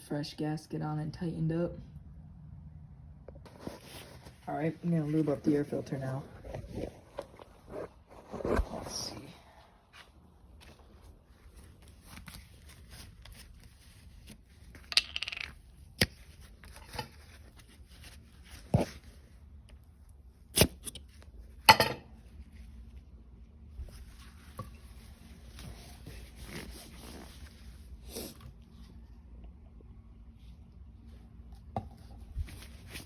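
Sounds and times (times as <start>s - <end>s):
small objects clicking and knocking: 14.8s - 16.1s.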